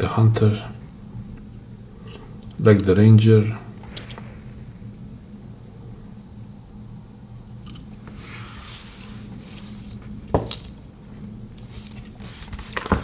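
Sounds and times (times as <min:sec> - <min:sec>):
metal knives being handled: 0:11.6 - 0:13.0.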